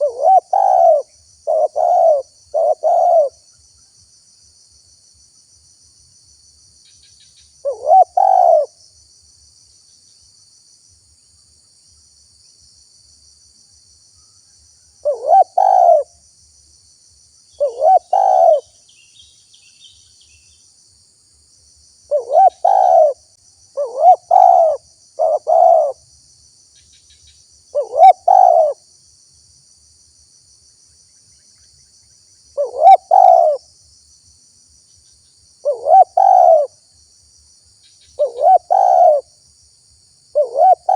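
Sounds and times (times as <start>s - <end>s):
dove cooing: 0.0s - 3.4s, 7.6s - 8.8s, 15.0s - 16.1s, 17.6s - 18.7s, 22.1s - 23.2s, 23.8s - 26.0s, 27.7s - 28.8s, 32.6s - 33.6s, 35.6s - 36.8s, 38.2s - 39.3s, 40.3s - 40.9s.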